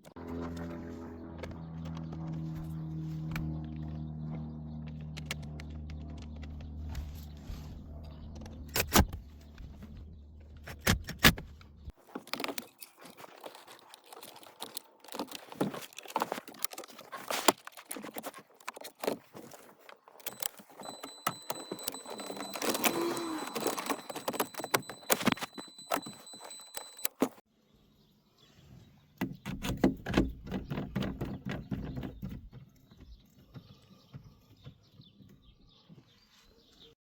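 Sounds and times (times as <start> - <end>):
sharp clicks: 4.8 - 7.0, 20.1 - 27.4
plastic trim clicking and rattling: 12.2 - 27.4.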